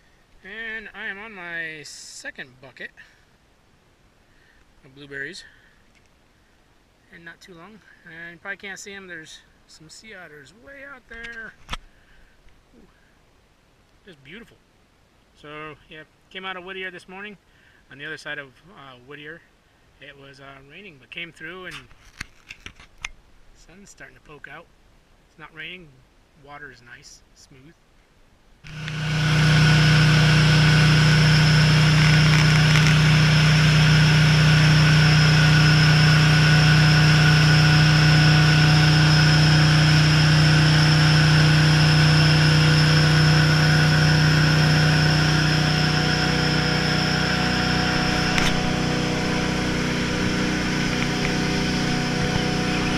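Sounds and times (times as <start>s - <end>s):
boat engine humming: 28.6s - 52.9s.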